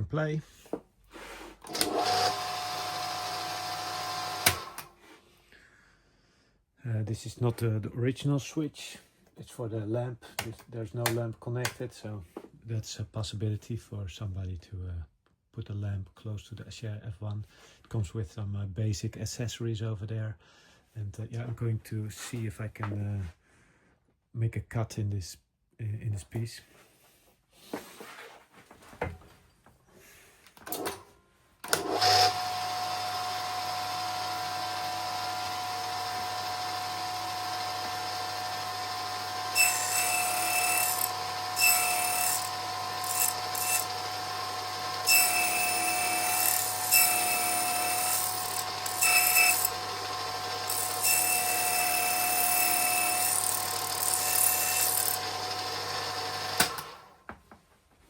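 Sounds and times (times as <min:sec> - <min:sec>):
cutter cutting metal: 0:01.7 - 0:04.9, 0:31.7 - 0:57.1
milling machine spindle whine: 0:32.0 - 0:57.0.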